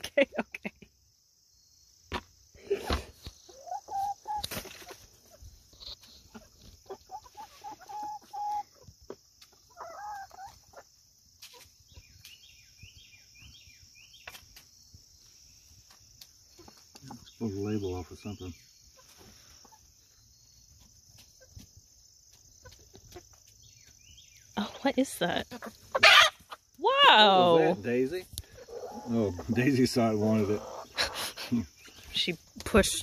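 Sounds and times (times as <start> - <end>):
chicks squawking and trilling: 1.6 - 26.8, 27.4 - 33.0.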